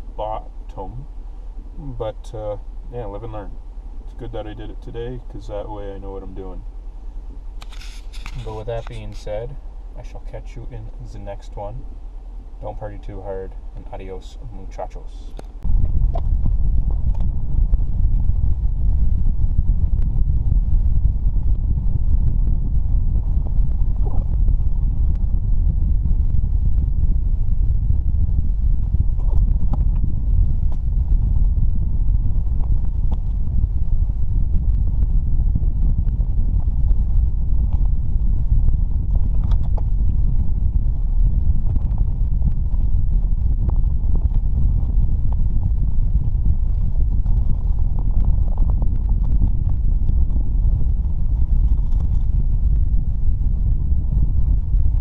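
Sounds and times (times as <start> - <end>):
wind buffeting microphone: 0.0 - 55.0.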